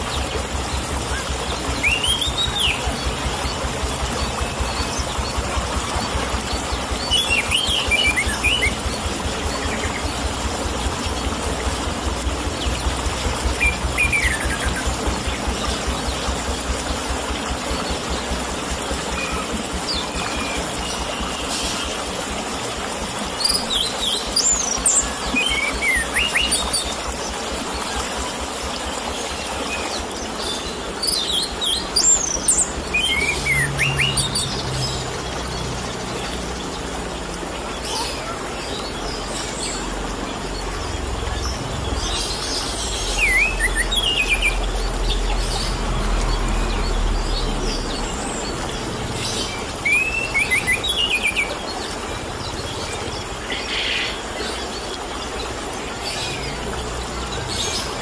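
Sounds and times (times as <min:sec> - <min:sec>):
trickle of running water: 0:00.0 - 0:58.0.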